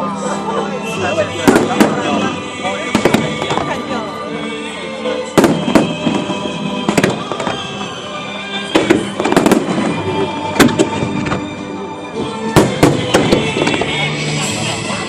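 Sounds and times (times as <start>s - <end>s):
music playing: 0.0s - 15.0s
fireworks exploding: 1.4s - 4.0s, 5.3s - 8.0s, 8.6s - 11.6s, 12.5s - 14.3s.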